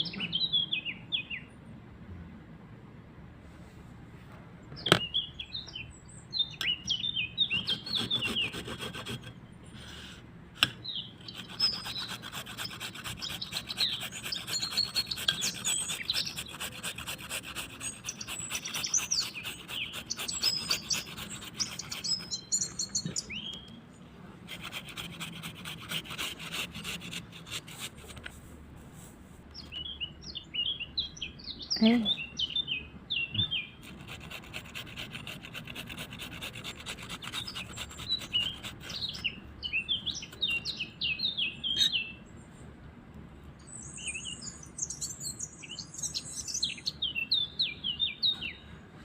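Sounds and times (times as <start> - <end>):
birds chirping: 0.0 - 1.6, 4.6 - 28.3, 29.5 - 42.6, 43.4 - 49.0
fast even scraping: 7.5 - 23.2, 24.4 - 28.5, 33.8 - 39.3.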